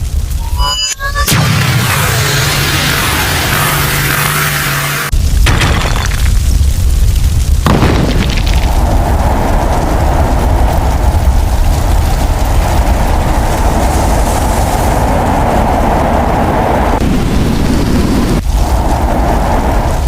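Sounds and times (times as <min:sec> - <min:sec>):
boom: 0:01.2 - 0:04.5, 0:05.1 - 0:06.8, 0:07.6 - 0:12.2.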